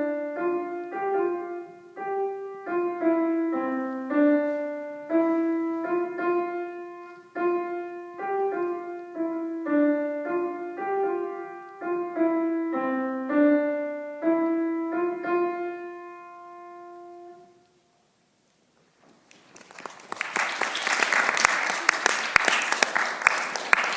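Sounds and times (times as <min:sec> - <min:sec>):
piano melody: 0:00.0 - 0:17.8
applause: 0:19.2 - 0:23.9.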